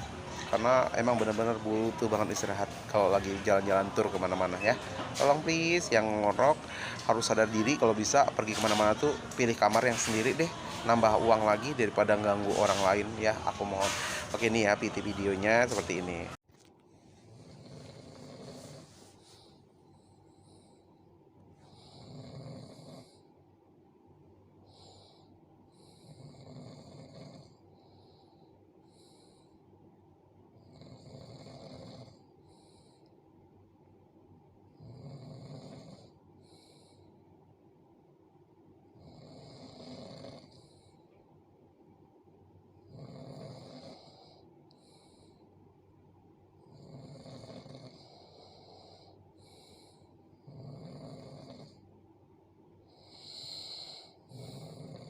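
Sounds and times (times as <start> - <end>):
soft breathing: 6.6 - 7.1, 16.9 - 22.2, 27.7 - 29.8, 43.8 - 45.6, 47.4 - 50.6, 52.8 - 54.8
person snoring heavily: 17.3 - 19.0, 21.6 - 23.3, 25.9 - 27.6, 30.6 - 32.8, 34.8 - 36.9, 39.0 - 40.8, 42.9 - 45.1, 46.6 - 51.8, 52.9 - 55.0.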